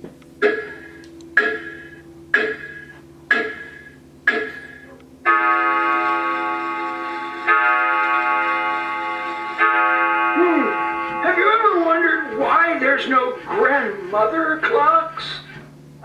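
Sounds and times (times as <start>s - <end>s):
organ-like chord: 0.4s - 15.4s
clock chime bell note: 5.2s - 13.8s.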